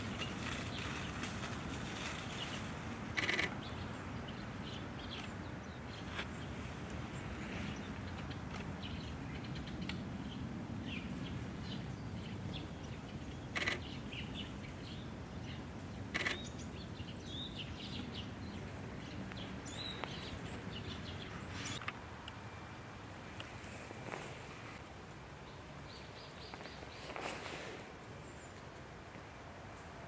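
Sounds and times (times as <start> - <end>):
small birds chirping: 7.2 - 21.8.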